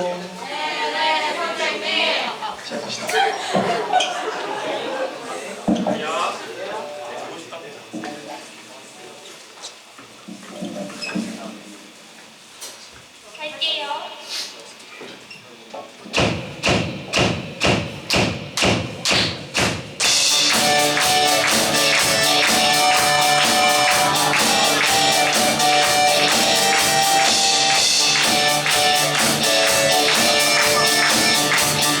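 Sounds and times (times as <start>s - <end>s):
drum hits counting in: 16.1s - 32.0s
live rock band playing: 20.0s - 32.0s.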